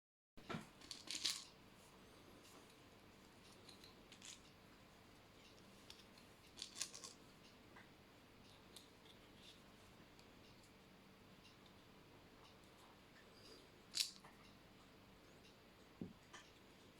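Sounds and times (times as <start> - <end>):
faint small clicks and rattles: 0.4 - 1.6, 2.3 - 4.6, 5.3 - 10.8.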